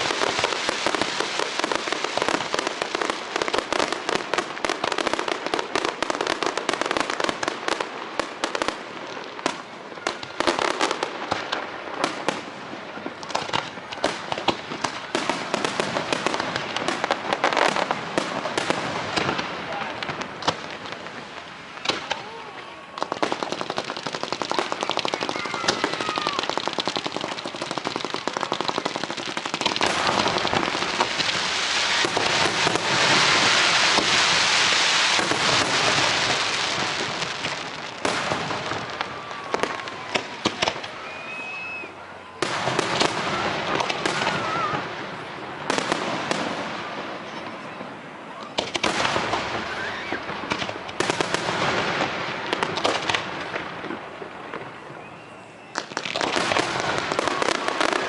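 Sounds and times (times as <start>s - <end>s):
fireworks crackling and banging: 0.0s - 58.0s
firework whistles: 21.7s - 44.9s, 49.2s - 50.7s, 54.5s - 58.0s.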